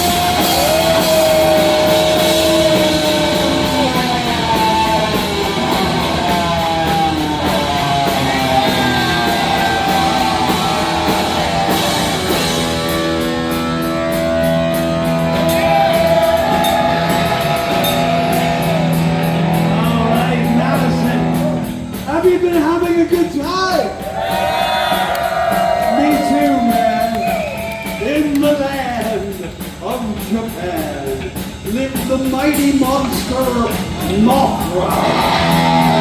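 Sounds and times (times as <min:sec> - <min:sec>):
distorted electric guitar: 0:00.0 - 0:22.9, 0:33.0 - 0:36.0
fast drumming: 0:00.0 - 0:36.0.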